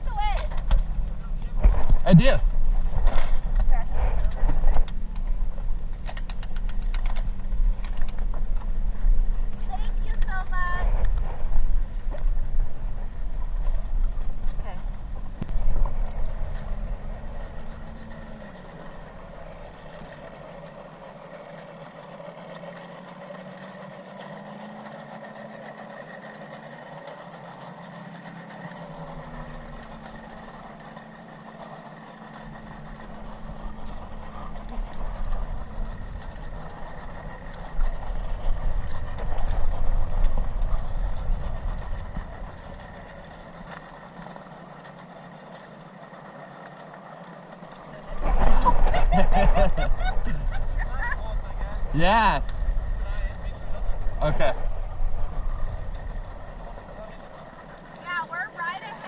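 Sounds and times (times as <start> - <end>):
low rumble: 0.0 - 21.2, 32.4 - 44.4, 47.7 - 58.7
outboard motor running: 0.0 - 59.0.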